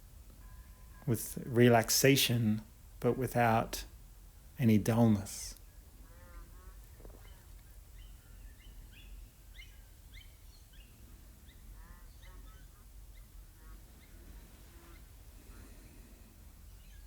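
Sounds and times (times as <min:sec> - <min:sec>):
birds chirping and calling: 0:06.6 - 0:14.2.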